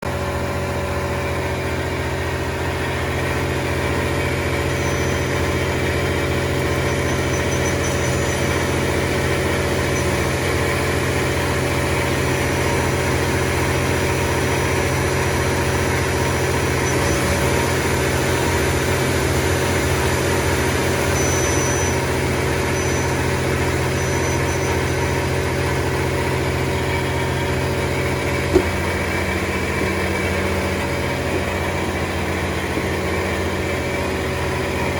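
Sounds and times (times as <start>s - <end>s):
machine hum: 0.0s - 34.9s
faint high whistle: 4.7s - 5.4s, 6.8s - 9.1s, 21.1s - 25.4s.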